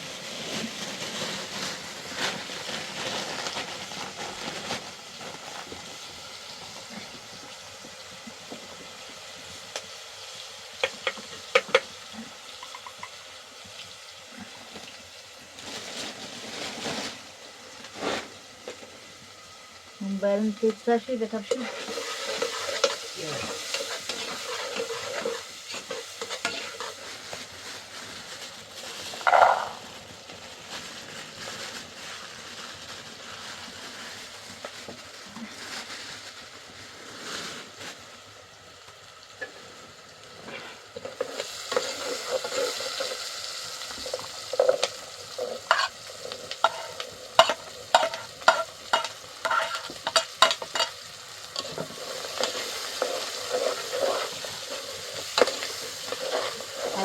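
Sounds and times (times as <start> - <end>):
food sizzling in a frying pan: 0.0 - 57.0
utensil striking pan: 29.2 - 29.8, 44.0 - 51.0.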